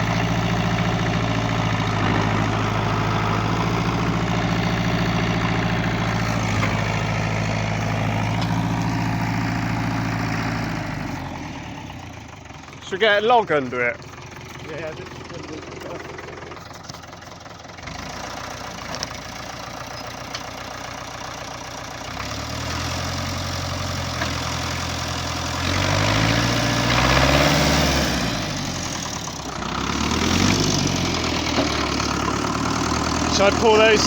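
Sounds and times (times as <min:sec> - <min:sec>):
machine engine revving: 0:00.0 - 0:12.2, 0:25.4 - 0:34.0.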